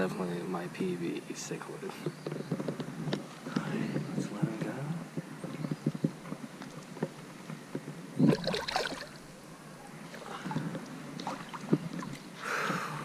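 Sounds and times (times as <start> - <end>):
creek water sloshing and splashing: 8.2 - 12.4
loud splash of fish into water: 8.3 - 9.2.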